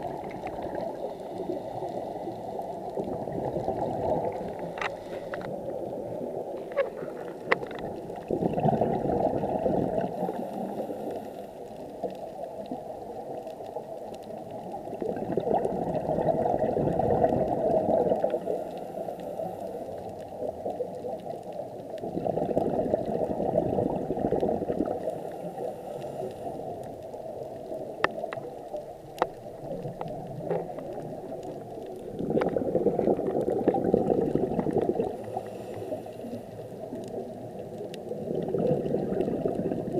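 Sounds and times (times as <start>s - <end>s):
bubbling exhalations underwater: 0.0s - 1.1s, 2.9s - 4.8s, 5.5s - 10.8s, 14.7s - 18.4s, 21.9s - 25.2s, 27.7s - 35.6s, 36.8s - 39.9s.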